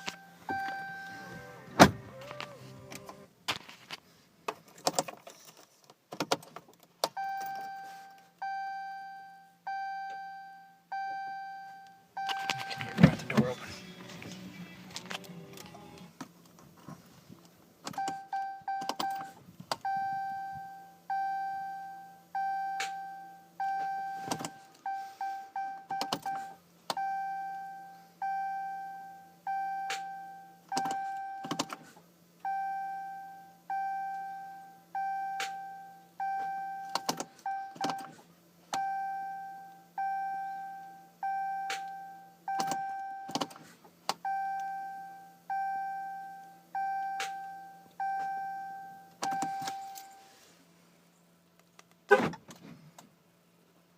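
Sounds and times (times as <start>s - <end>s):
dashboard warning chime: 0.0s - 3.2s, 7.2s - 13.7s, 44.3s - 50.3s
steady low hum: 0.0s - 3.4s.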